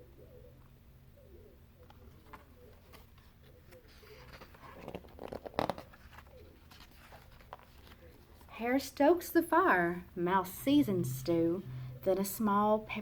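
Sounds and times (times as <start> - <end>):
faint steady hum: 0.0 - 13.0
paper page rustling: 1.9 - 8.5.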